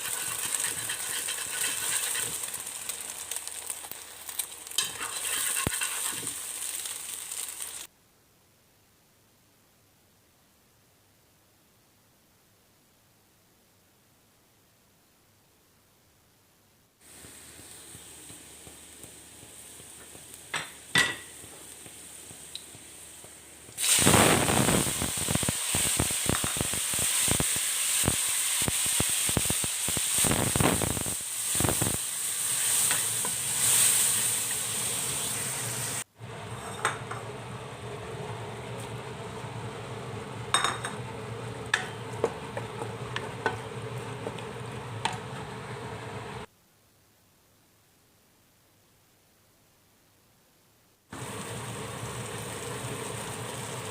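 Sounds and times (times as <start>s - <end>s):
food sizzling in hot oil: 0.0s - 7.9s, 17.0s - 46.5s, 51.1s - 53.9s.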